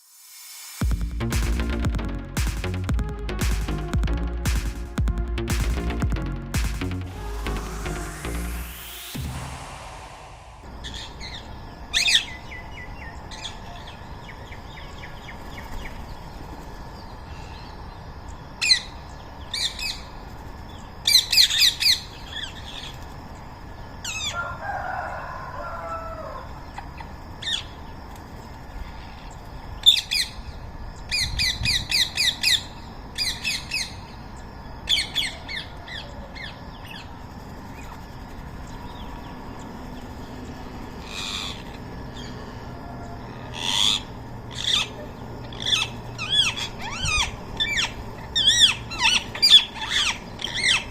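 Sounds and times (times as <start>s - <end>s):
outdoor background noise: 0.0s - 50.9s
parakeets screeching: 39.9s - 50.9s.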